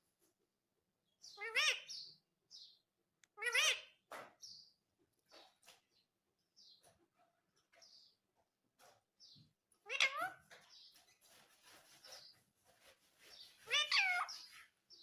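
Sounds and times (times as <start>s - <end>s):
parrot chirps and clicks: 9.8s - 10.7s.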